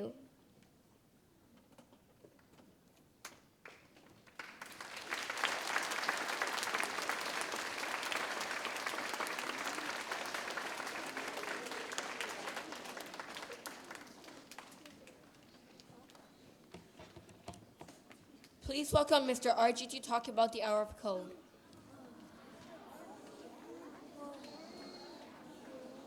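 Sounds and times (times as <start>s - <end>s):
audience applauding: 3.6s - 16.3s.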